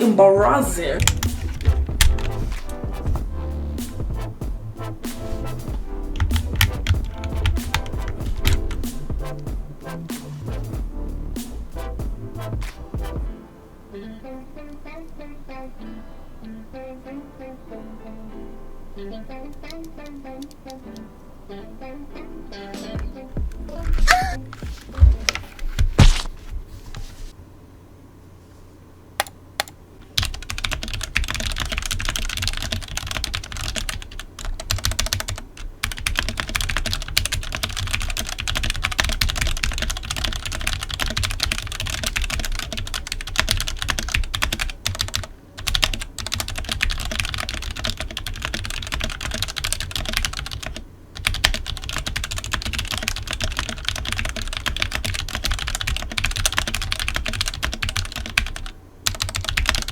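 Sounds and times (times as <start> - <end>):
fast mechanical keyboard typing: 1.0 - 3.2, 6.2 - 9.4, 29.2 - 59.9
keyboard rattling: 1.0 - 3.2, 6.2 - 9.5, 29.2 - 59.9.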